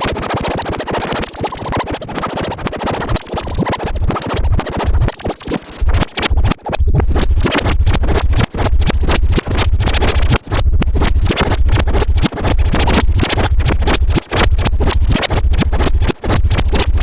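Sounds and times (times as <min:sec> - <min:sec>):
heavy low rumble: 0:09.6 - 0:12.8.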